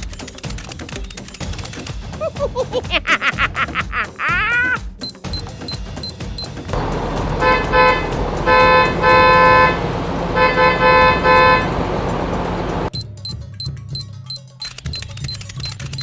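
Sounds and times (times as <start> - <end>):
engine rumble: 6.7 - 12.9
vehicle horn honking: 6.8 - 12.9.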